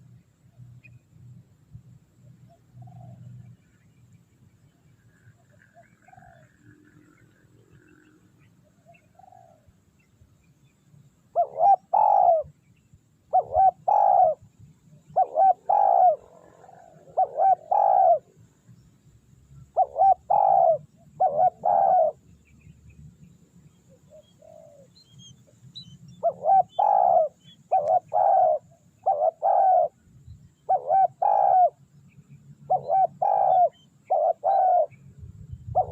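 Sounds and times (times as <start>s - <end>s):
dove cooing: 2.6s - 3.4s, 5.5s - 6.6s, 8.8s - 9.7s, 11.3s - 12.5s, 13.3s - 14.4s, 15.0s - 18.4s, 19.7s - 22.2s, 24.1s - 25.0s, 26.2s - 30.0s, 30.7s - 31.9s, 32.7s - 35.0s, 35.6s - 35.9s.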